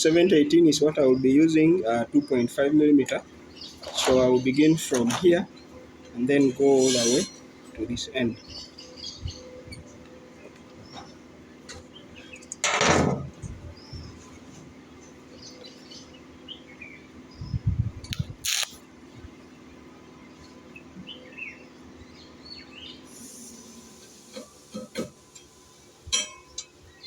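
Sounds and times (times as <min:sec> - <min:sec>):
birds chirping: 0:00.0 - 0:12.6, 0:13.6 - 0:23.1
sharp click: 0:18.0 - 0:18.8.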